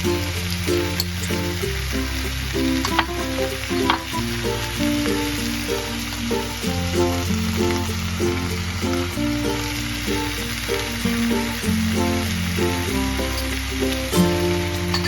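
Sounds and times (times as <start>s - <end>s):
background music with bass: 0.0s - 15.0s
food sizzling in a frying pan: 0.0s - 15.0s
stirring clicks: 2.8s - 4.2s.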